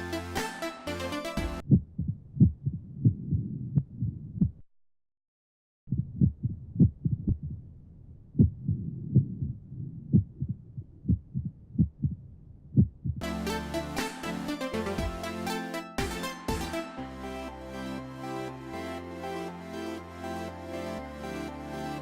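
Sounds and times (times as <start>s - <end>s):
music: 0.0s - 1.6s, 13.2s - 22.0s
dull irregular heartbeats: 1.6s - 4.6s, 5.9s - 13.2s.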